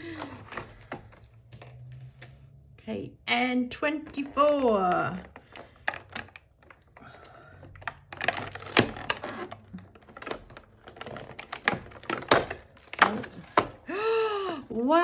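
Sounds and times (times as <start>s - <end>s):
cardboard being torn open: 0.0s - 1.2s, 7.8s - 13.8s.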